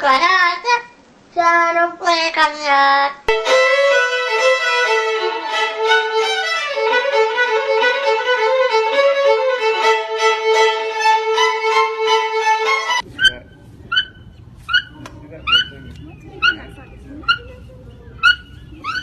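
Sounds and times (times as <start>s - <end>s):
violin melody: 3.3s - 13.4s.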